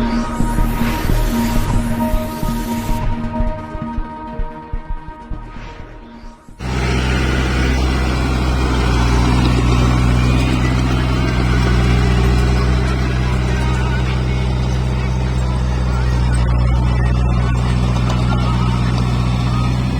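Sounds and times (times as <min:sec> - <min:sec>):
combine harvester running: 0:06.6 - 0:19.9.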